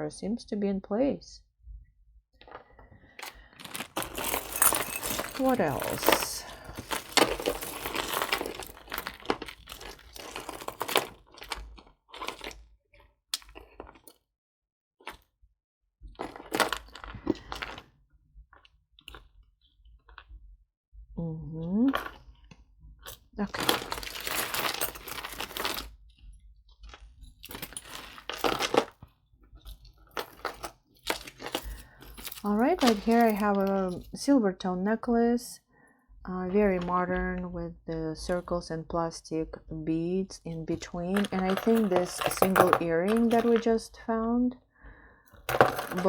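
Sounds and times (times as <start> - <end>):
jewelry rustling and clicking: 3.2 - 12.6, 23.0 - 26.0, 27.2 - 34.2, 40.5 - 43.8, 45.3 - 46.0.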